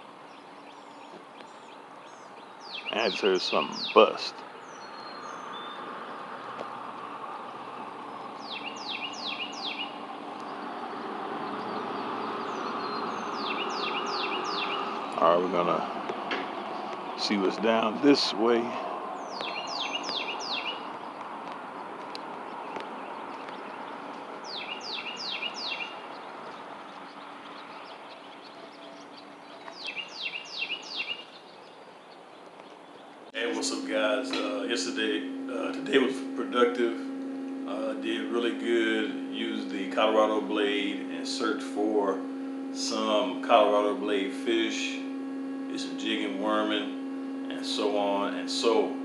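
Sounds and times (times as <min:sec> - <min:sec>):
outdoor background hiss: 0:00.0 - 0:49.0
songbird singing: 0:00.0 - 0:49.0
bird down-slurred whistles: 0:02.6 - 0:05.9, 0:08.4 - 0:10.0, 0:11.6 - 0:15.2, 0:19.2 - 0:20.9, 0:24.4 - 0:26.0.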